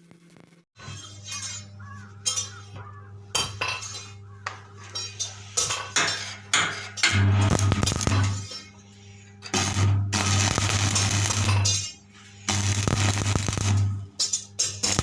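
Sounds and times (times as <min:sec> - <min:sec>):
welding machine humming: 0:03.9 - 0:15.0
welding arc crackle: 0:05.6 - 0:08.7, 0:09.4 - 0:15.0.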